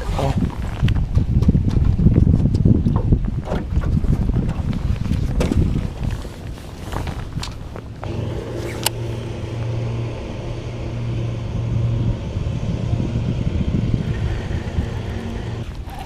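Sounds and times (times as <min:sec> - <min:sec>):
wind noise: 0:00.0 - 0:16.0
rumbling water: 0:02.8 - 0:16.0
boat motor humming: 0:07.7 - 0:16.0.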